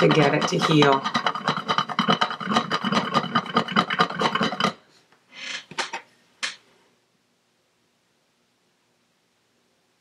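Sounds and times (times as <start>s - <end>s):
cookie rattling on hard surface: 0.0s - 4.8s.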